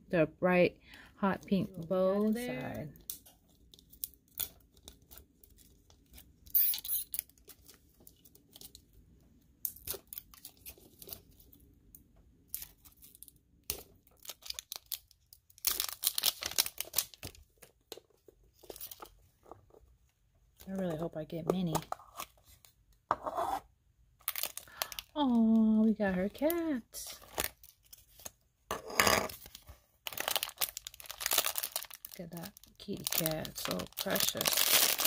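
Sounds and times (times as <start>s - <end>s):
wrapping tearing and crinkling: 1.4s - 8.9s, 9.6s - 11.6s, 12.5s - 19.8s, 24.2s - 28.4s, 29.3s - 35.0s.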